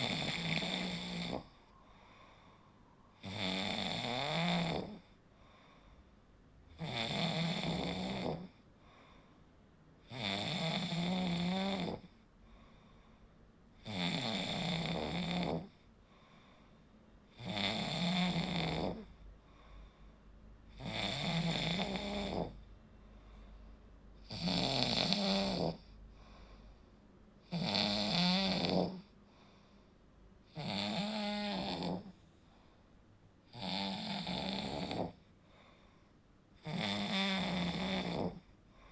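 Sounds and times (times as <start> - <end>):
person snoring: 0.0 - 2.5, 3.1 - 5.7, 6.7 - 8.6, 10.1 - 12.2, 13.8 - 15.8, 17.3 - 19.8, 20.7 - 22.6, 24.2 - 26.6, 27.5 - 29.2, 30.5 - 32.2, 33.5 - 35.3, 36.6 - 38.5.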